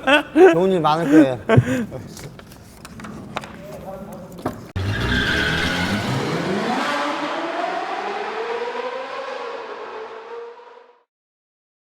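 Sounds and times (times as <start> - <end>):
car engine accelerating: 4.8 - 11.1.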